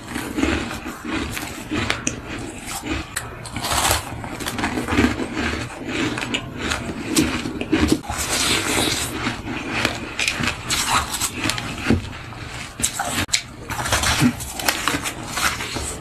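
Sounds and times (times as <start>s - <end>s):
ice being crunched: 0.0s - 11.9s.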